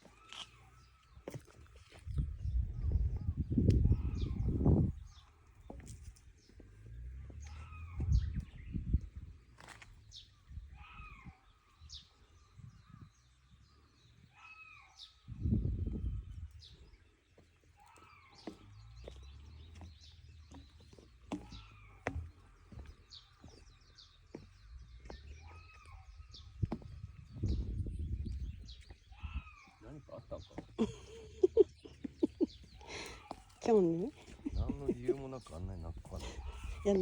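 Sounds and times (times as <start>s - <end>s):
small birds chirping: 0.0s - 37.0s
low rumbles: 2.1s - 10.8s, 18.7s - 37.0s.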